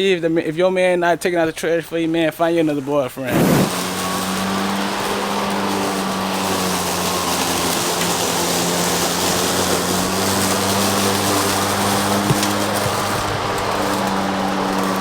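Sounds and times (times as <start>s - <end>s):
lawn mower engine running: 3.3s - 15.0s.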